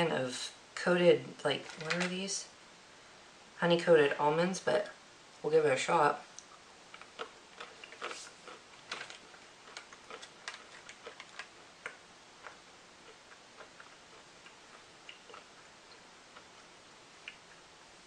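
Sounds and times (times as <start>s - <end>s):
chewing crunchy snack: 6.9s - 16.7s.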